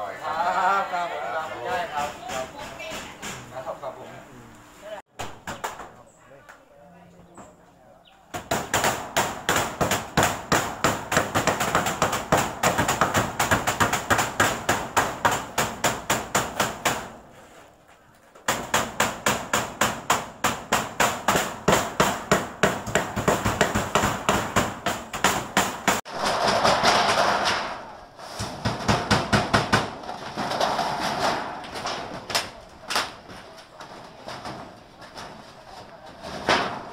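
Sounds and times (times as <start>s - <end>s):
hammers striking nails: 1.9s - 3.5s, 8.3s - 17.2s, 18.4s - 27.8s, 28.4s - 33.3s.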